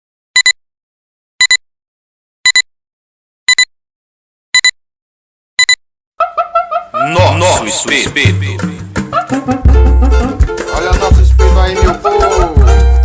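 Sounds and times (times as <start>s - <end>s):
electronic beeps in pairs: 0.4s - 0.6s, 1.4s - 1.6s, 2.5s - 2.7s, 3.5s - 3.7s, 4.6s - 4.8s, 5.6s - 5.8s.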